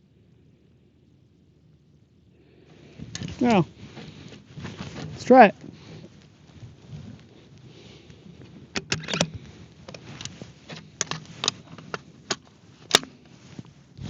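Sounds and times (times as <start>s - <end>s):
rifle and gear handling clicks: 8.7s - 13.3s.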